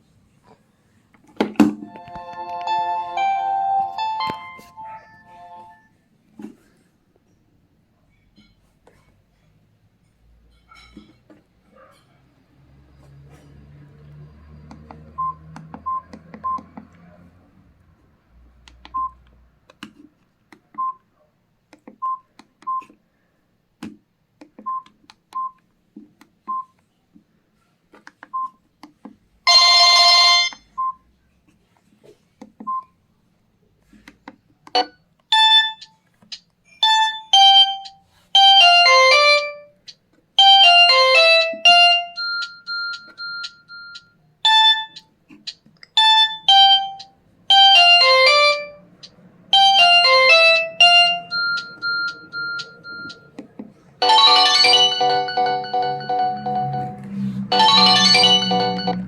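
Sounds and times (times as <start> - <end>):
electronic ringtone melody: 1.9 - 5.9, 34.8 - 35.9, 36.8 - 39.7, 40.4 - 45.0, 46.0 - 48.9, 49.5 - 53.3, 54.0 - 59.0
loud phone tone: 1.9 - 5.9, 54.0 - 59.0.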